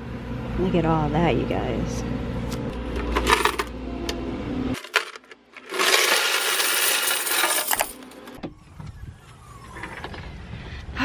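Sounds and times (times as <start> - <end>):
coins clinking: 2.9 - 3.7, 4.8 - 8.1
coins being poured out: 3.1 - 3.7, 4.8 - 8.0.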